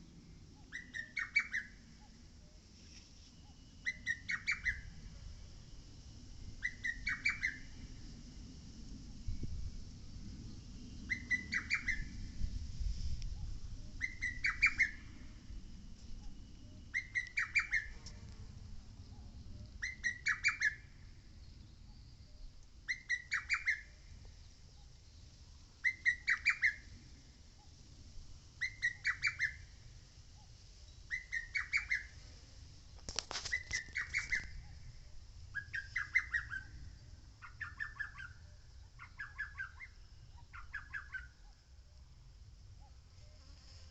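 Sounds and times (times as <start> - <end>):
brief rustling: 33.0 - 34.6.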